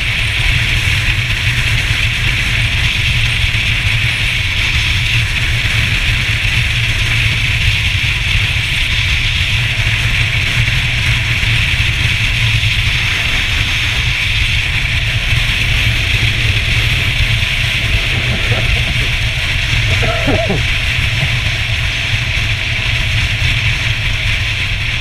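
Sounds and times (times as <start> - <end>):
loud steady rumble: 0.0 - 25.0
hiss: 12.0 - 23.0.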